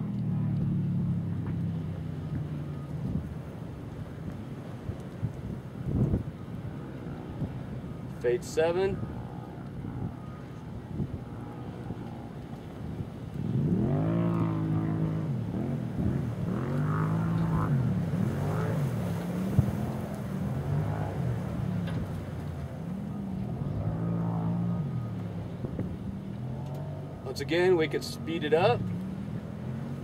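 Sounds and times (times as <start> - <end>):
vehicle engine revving: 11.0 - 30.0.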